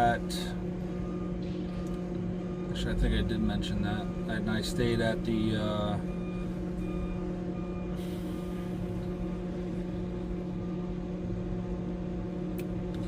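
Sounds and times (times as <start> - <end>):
diesel truck engine idling: 0.0 - 13.0.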